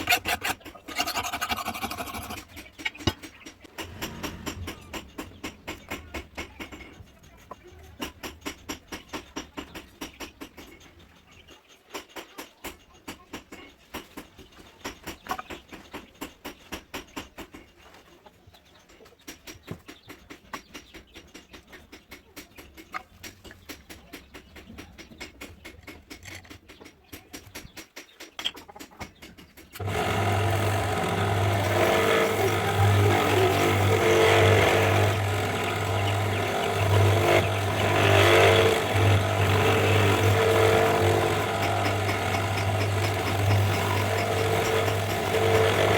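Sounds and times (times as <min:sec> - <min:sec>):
electric power tool humming: 0:29.8 - 0:45.9.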